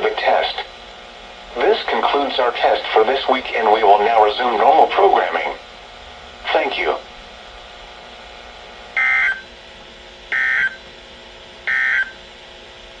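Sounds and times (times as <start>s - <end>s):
radio hiss: 0.0s - 0.8s, 1.5s - 5.7s, 6.4s - 7.1s.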